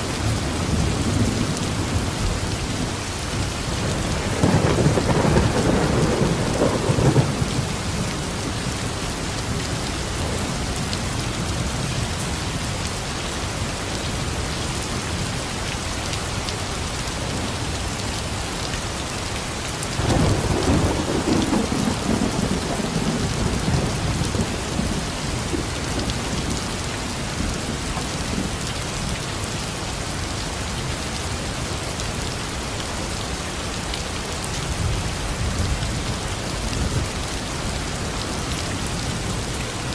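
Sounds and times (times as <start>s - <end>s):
steady rain falling: 0.0s - 39.9s
thunder rumbling: 3.8s - 8.9s, 20.0s - 28.7s.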